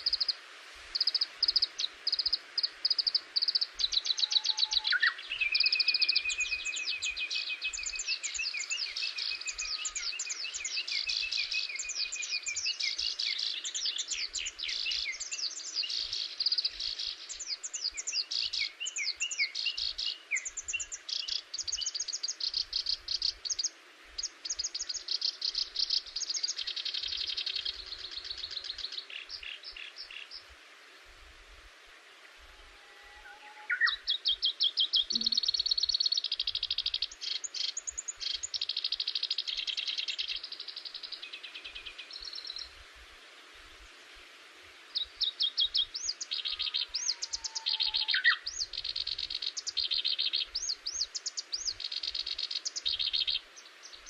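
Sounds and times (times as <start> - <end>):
birds singing and chirping: 1.0 - 30.5, 33.2 - 42.7, 45.0 - 54.0
long wavering whistled bird phrase: 3.9 - 10.7, 32.8 - 34.2, 46.5 - 49.0.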